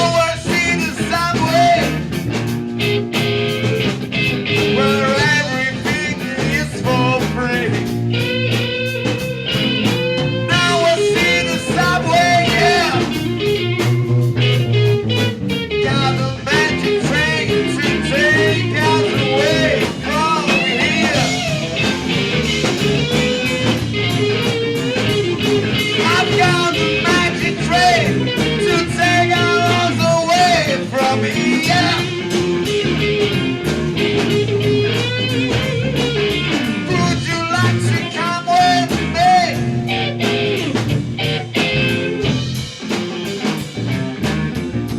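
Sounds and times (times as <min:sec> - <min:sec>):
bluesy electric guitar: 0:00.0 - 0:44.9
rock band playing: 0:00.0 - 0:44.9.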